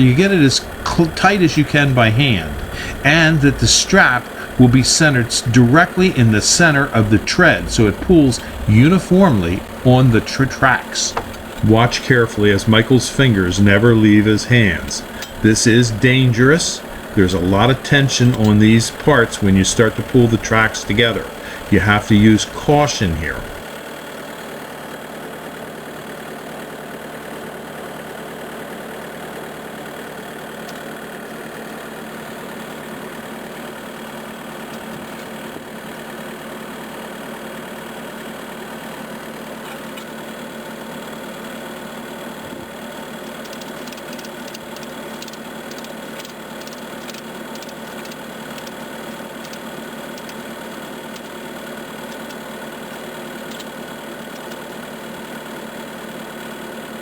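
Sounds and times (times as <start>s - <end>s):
skid steer engine idling: 0.0s - 57.0s
light clicks: 43.2s - 50.5s, 52.0s - 54.8s.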